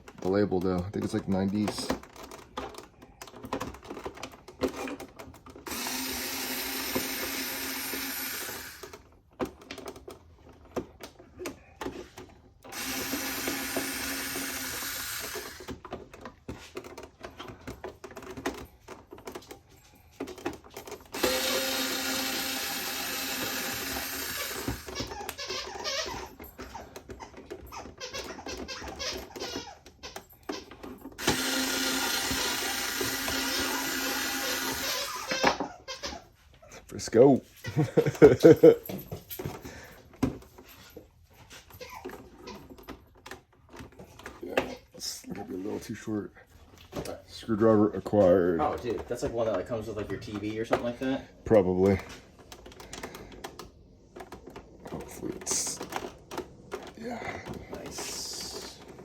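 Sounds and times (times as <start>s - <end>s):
small metal tools clattering: 15.2s - 21.5s, 22.4s - 31.3s, 34.8s - 59.0s
steady whirring: 21.1s - 25.0s.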